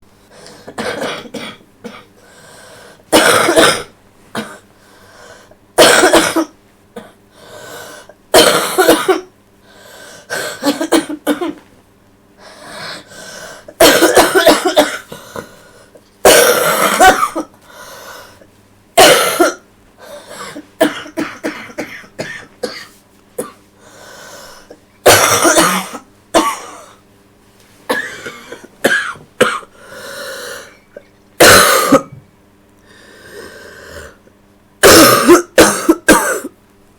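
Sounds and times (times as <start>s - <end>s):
girl coughing wet: 0.7s - 2.1s, 3.1s - 4.6s, 5.8s - 7.2s, 8.3s - 9.3s, 10.3s - 11.6s, 13.8s - 15.1s, 16.2s - 17.5s, 19.0s - 19.6s, 20.3s - 23.6s, 25.0s - 27.0s, 27.9s - 29.7s, 31.4s - 32.2s, 34.8s - 36.6s.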